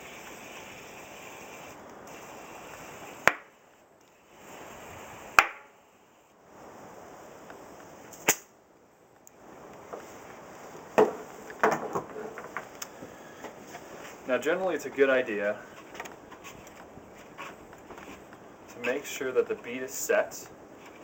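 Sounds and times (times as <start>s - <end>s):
air hissing into tire: 0.0s - 6.9s
tire bead popping onto rim: 5.4s - 5.7s.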